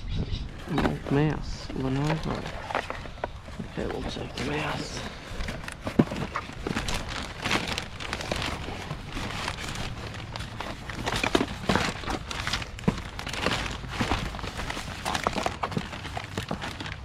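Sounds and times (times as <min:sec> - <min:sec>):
junk clicking and knocking: 0:00.5 - 0:17.0.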